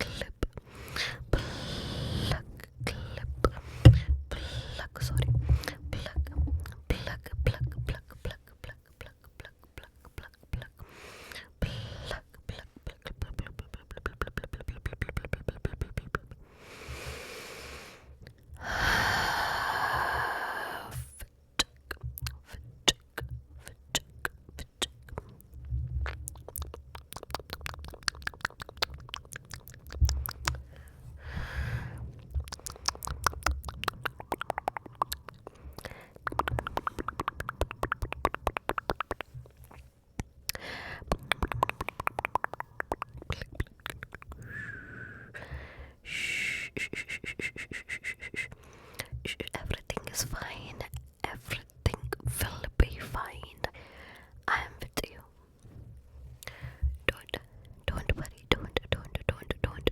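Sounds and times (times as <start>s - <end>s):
breathy mouth hiss: 0.0s - 6.1s, 16.6s - 21.2s, 27.2s - 39.8s, 40.5s - 49.4s
tongue and lip clicks: 0.0s - 16.4s, 21.1s - 45.5s, 46.1s - 53.7s, 56.4s - 59.9s.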